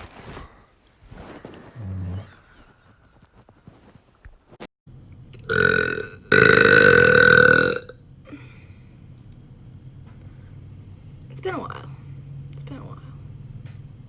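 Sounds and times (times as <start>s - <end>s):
woman burping loudly: 5.4s - 7.9s.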